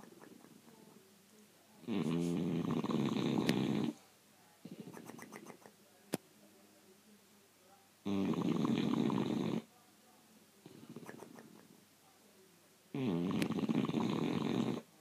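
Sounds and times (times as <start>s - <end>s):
dog snoring: 1.8s - 4.0s, 8.0s - 9.7s, 12.9s - 14.9s.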